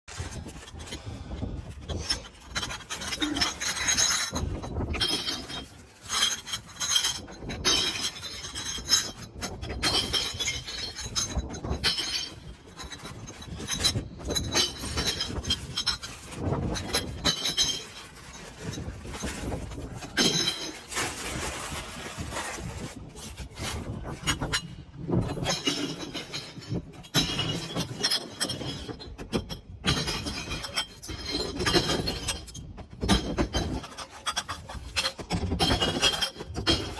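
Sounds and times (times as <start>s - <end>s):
glass bottles clinking and crashing: 16.6s - 21.7s.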